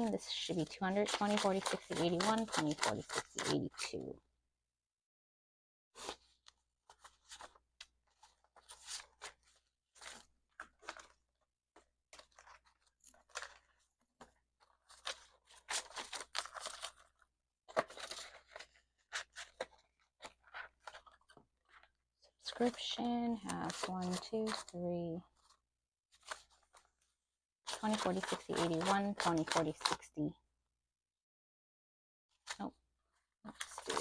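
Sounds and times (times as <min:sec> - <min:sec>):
banknotes rustling: 0:12.2 - 0:21.9, 0:27.7 - 0:30.0.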